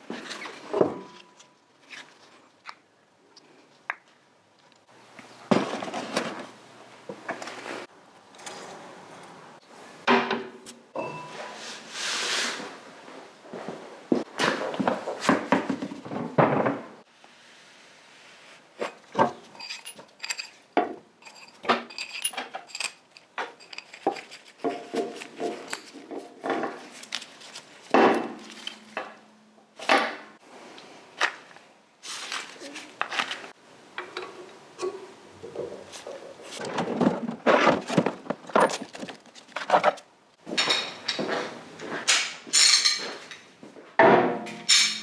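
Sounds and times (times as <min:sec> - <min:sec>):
metal parts clinking and clanking: 0:19.0 - 0:27.2, 0:42.1 - 0:43.5, 0:44.4 - 0:45.0.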